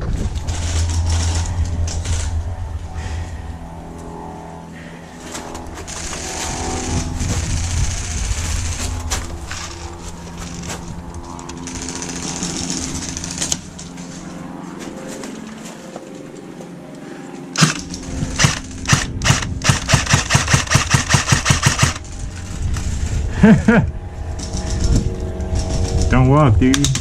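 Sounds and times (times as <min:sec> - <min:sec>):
low rumbling outdoor noise: 0:00.0 - 0:27.0
airsoft gun firing rapid shots: 0:17.6 - 0:17.8, 0:18.4 - 0:22.0.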